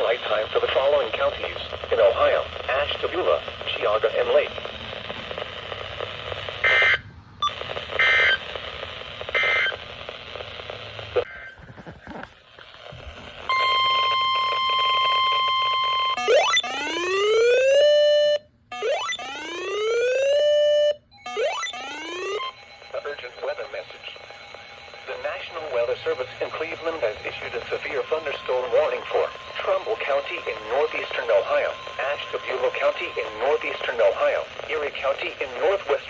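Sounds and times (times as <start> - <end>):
radio hiss: 0.0 - 16.0, 22.9 - 36.0
rising siren whoops: 13.5 - 22.5
digital data tone bursts: 21.6 - 34.5.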